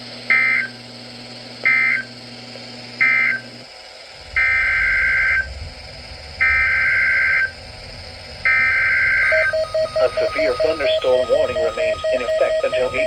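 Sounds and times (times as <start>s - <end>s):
low background hum: 0.0s - 13.0s
two-tone digital data bursts: 8.5s - 13.0s.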